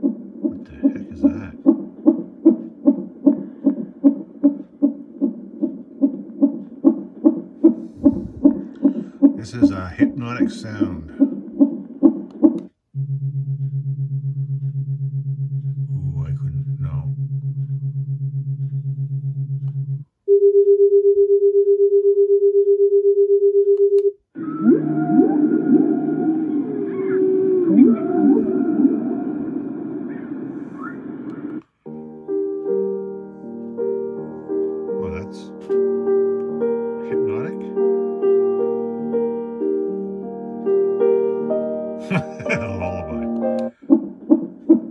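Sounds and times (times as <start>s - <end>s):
low pulsing tone: 0.0s - 1.7s, 7.7s - 8.7s, 13.0s - 20.0s
low even pulsing beat: 0.0s - 20.0s
gliding whale-song sound: 24.4s - 29.9s.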